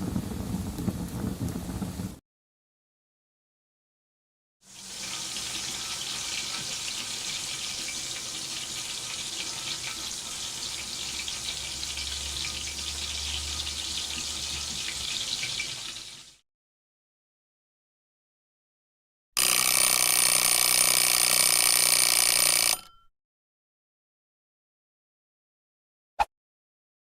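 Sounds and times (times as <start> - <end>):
water running from a tap: 4.7 - 16.4.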